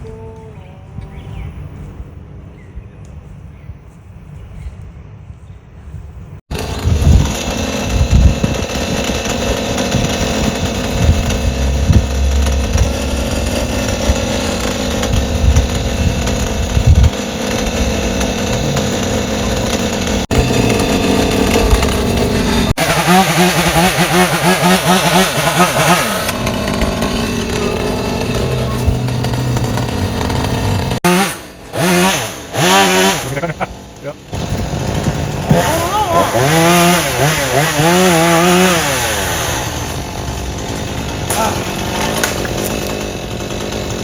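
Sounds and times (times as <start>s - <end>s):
chainsaw cutting: 6.5s - 44.0s.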